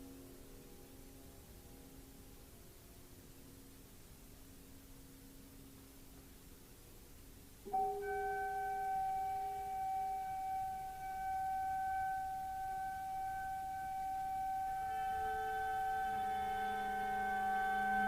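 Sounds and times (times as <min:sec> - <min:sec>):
high held note: 0:07.7 - 0:18.0
orchestral music: 0:14.7 - 0:18.0.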